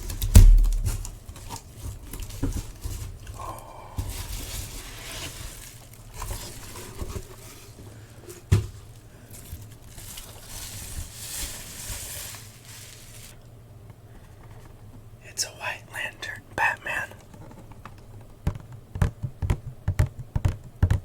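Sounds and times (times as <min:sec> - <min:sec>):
cardboard and plastic wrap rustling: 0:00.0 - 0:13.4.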